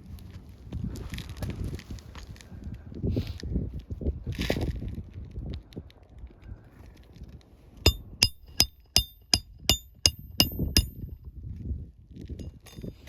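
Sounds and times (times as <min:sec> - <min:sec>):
hammer striking a nail: 0:07.9 - 0:11.2.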